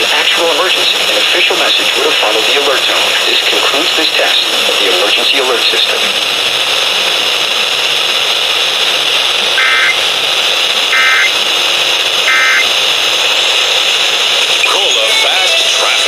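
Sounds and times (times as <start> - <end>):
radio static hiss: 0.0 - 16.0
warbling digital data tones: 9.6 - 10.0, 10.9 - 11.4, 12.2 - 12.7.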